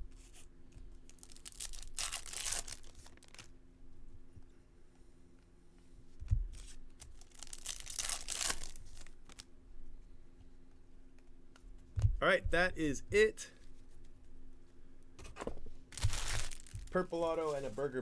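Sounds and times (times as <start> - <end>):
foil wrapper tearing and crinkling: 1.0 - 3.5, 7.0 - 9.4, 15.9 - 17.7.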